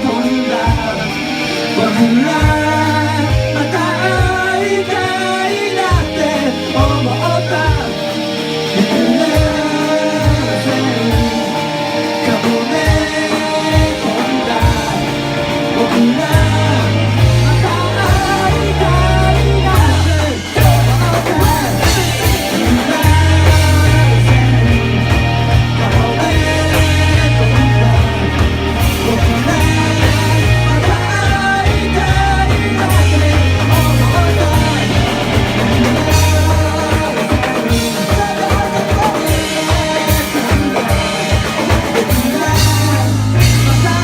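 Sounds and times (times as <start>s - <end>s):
person singing: 0.0s - 44.0s
rock band playing live: 0.0s - 44.0s
heavy bass line: 8.8s - 40.2s, 40.8s - 44.0s.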